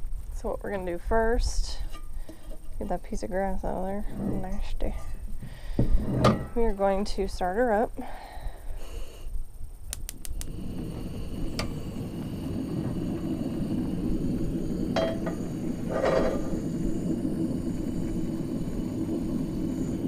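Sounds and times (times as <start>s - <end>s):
gas burner igniter clicks: 9.9s - 16.6s
gas flame rushing: 9.9s - 20.0s.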